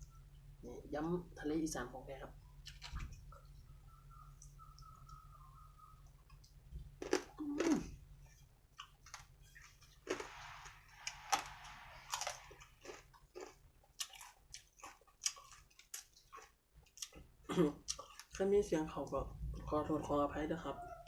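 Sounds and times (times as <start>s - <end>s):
person chewing crunchy food: 6.3s - 18.4s.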